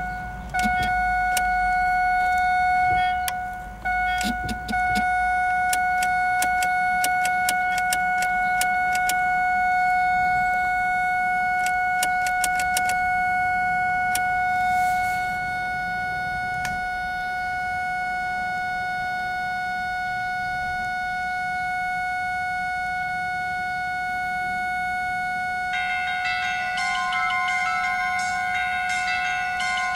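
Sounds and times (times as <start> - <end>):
car warning chime constant tone: 0.0 - 29.9
sharp irregular clicks: 4.1 - 9.2, 11.6 - 13.0.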